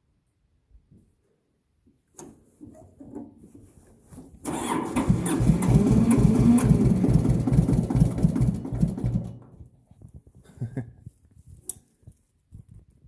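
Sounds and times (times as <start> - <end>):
diesel tractor engine running: 4.4 - 9.6.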